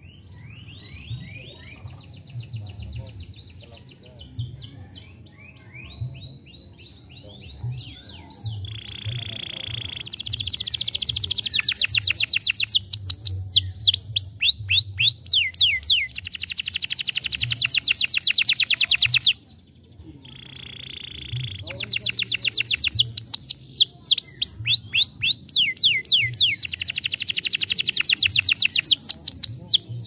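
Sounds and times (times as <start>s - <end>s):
canary singing trills: 0.0s - 30.0s.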